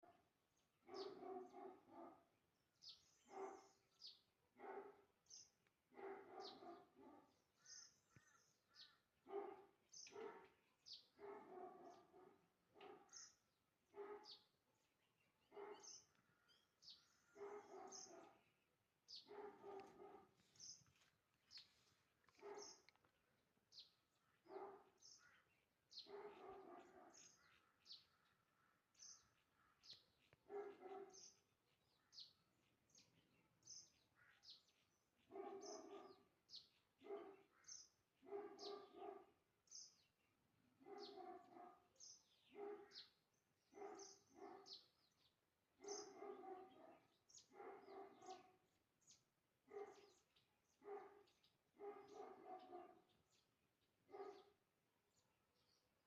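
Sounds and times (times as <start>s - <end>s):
faint dog barking: 0.9s - 2.3s, 3.3s - 3.8s, 6.0s - 7.8s, 8.8s - 13.4s, 14.0s - 14.4s, 15.5s - 16.1s, 17.4s - 18.4s, 19.2s - 20.8s, 22.3s - 23.0s, 24.4s - 28.0s, 30.4s - 31.4s, 35.3s - 36.3s, 37.0s - 39.4s, 40.8s - 43.1s, 43.8s - 44.8s, 45.8s - 48.6s, 49.7s - 50.2s, 50.8s - 53.1s, 54.1s - 54.6s
bird chirps: 2.8s - 23.0s.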